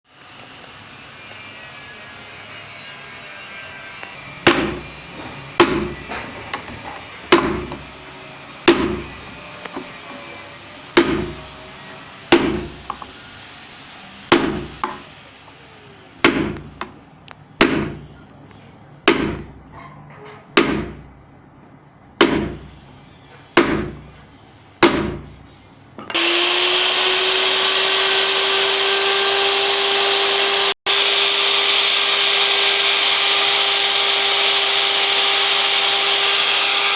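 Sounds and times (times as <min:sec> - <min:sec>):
sharp wooden knocks: 0:05.6 - 0:06.7, 0:07.3 - 0:07.9, 0:08.7 - 0:09.1, 0:11.0 - 0:11.4, 0:17.6 - 0:18.0, 0:19.1 - 0:19.6, 0:20.6 - 0:21.0
router motor whining: 0:26.1 - 0:36.9.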